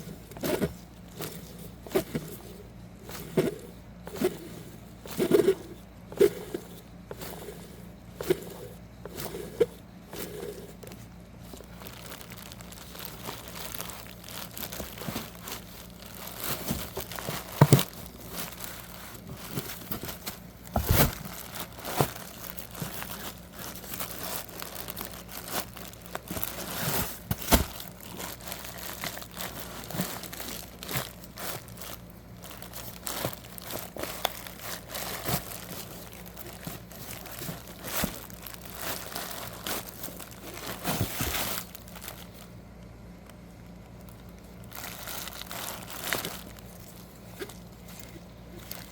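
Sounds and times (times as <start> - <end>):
faint low hum: 0.0 - 48.9.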